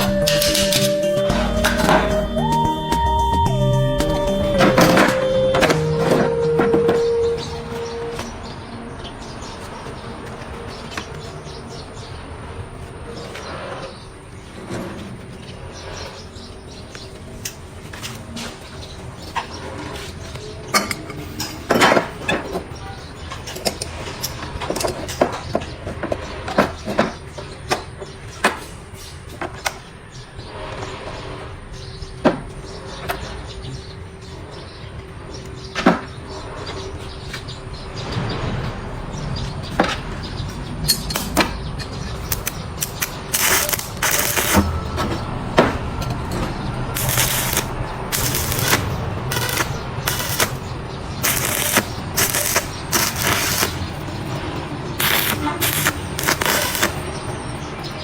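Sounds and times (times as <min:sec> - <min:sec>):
sharp clicks and snaps: 0:40.9 - 0:44.6, 0:51.2 - 0:53.8
welding arc crackling: 0:41.1 - 0:41.5, 0:42.2 - 0:44.8, 0:46.9 - 0:57.2.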